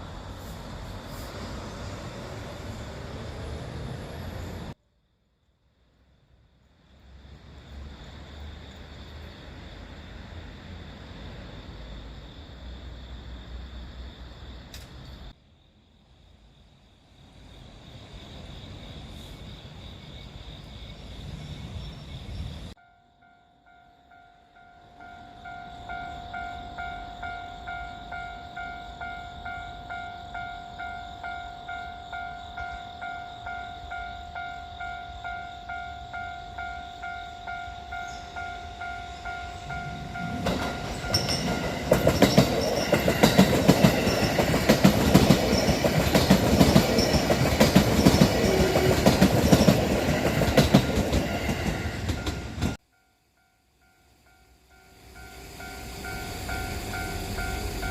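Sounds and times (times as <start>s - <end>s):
train wheels clattering: 39.6s - 52.8s.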